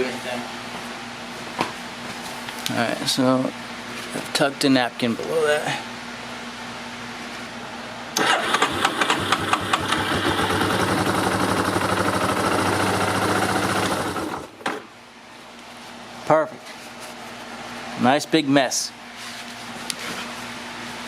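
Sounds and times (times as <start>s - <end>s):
engine cranking and running: 8.2s - 14.6s.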